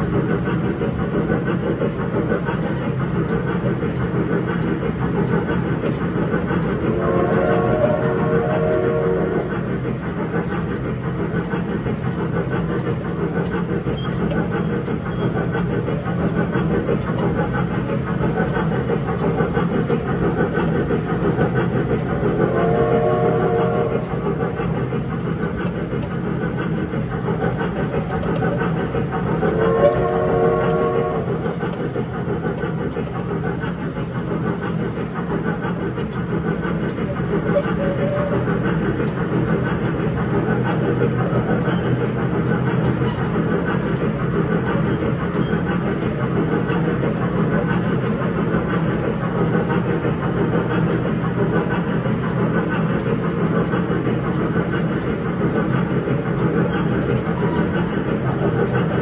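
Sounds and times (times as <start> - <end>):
electric train humming and rumbling: 0.0 - 59.0
electronic train whistle chords: 7.0 - 9.5, 22.5 - 24.0, 29.6 - 31.2.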